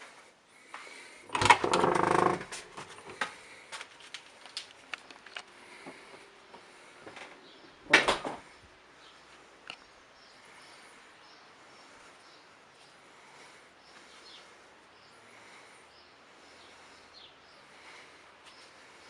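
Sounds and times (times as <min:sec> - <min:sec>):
loud creaking: 0:01.2 - 0:03.2.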